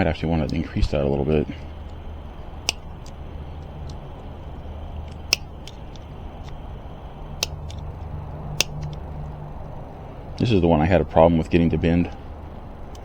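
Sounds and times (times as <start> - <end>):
hand tools clicking on metal: 0.0 - 6.6, 7.2 - 9.3
steady low hum: 0.0 - 13.0.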